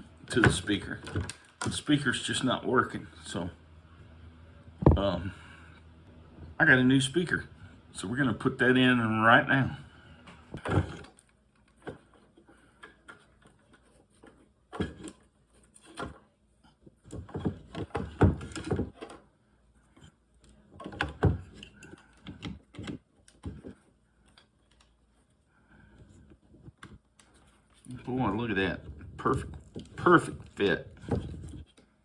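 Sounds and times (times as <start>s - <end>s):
plastic clicks and knocks: 20.7s - 25.0s.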